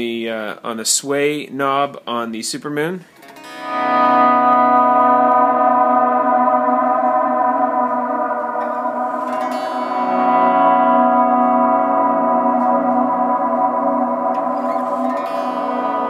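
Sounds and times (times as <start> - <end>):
electric guitar with reverb: 3.2 - 16.0.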